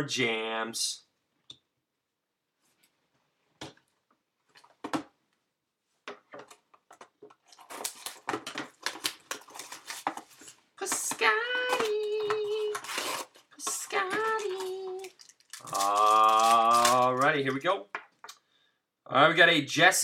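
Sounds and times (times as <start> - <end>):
card pack rustling and crinkling: 6.3 - 17.7
person humming: 13.6 - 17.2.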